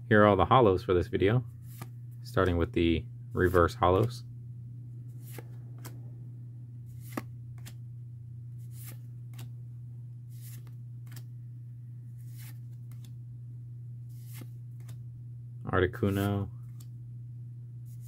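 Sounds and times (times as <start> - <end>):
steady low hum: 0.0 - 18.0
cards swishing and sliding: 1.6 - 2.6, 3.4 - 4.2, 5.1 - 6.1, 6.9 - 7.8, 8.5 - 9.5, 10.3 - 11.3, 12.1 - 13.2, 14.0 - 15.0, 16.0 - 16.9.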